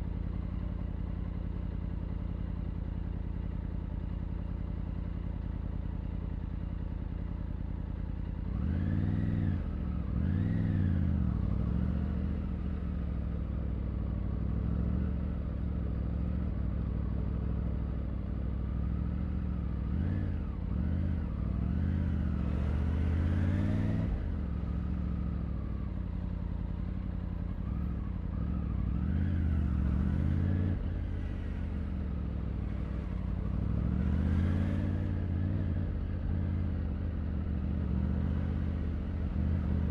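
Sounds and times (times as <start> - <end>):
motorcycle engine revving: 8.4 - 13.0, 18.8 - 39.9.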